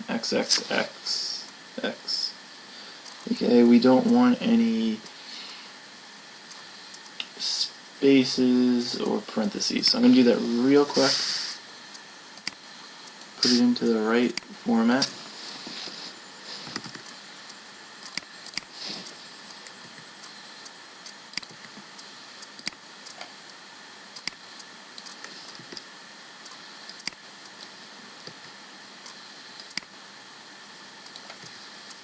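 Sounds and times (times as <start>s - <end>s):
steady hiss: 0.0s - 32.0s
keyboard and mouse clicks: 16.6s - 17.2s, 21.0s - 23.3s, 24.2s - 29.9s, 31.0s - 32.0s.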